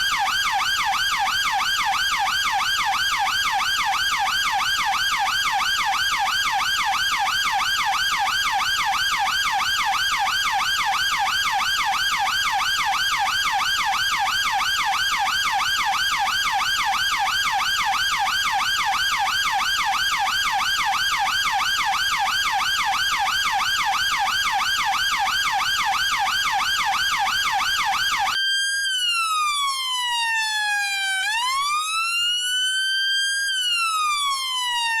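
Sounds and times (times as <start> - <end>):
police siren yelp and wail: 0.0 - 35.0.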